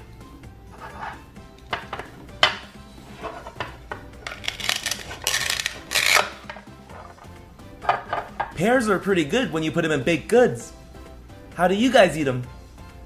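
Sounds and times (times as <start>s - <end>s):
faint background music: 0.0s - 13.0s
velcro ripping apart: 4.2s - 6.6s.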